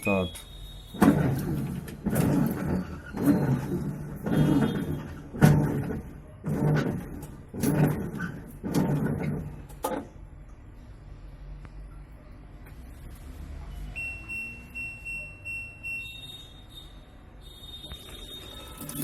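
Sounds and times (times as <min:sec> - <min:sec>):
washing machine pulsator bursts: 0:00.6 - 0:09.7
washing machine knock: 0:01.0 - 0:10.1.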